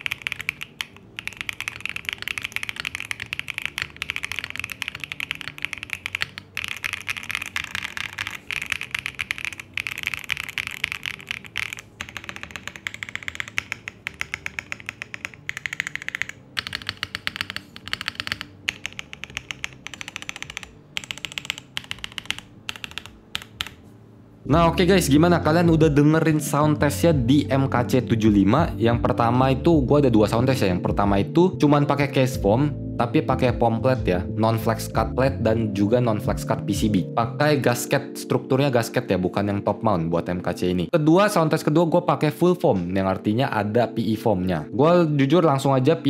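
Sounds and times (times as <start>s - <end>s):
fast typing on mechanical keyboard: 0.0s - 23.8s.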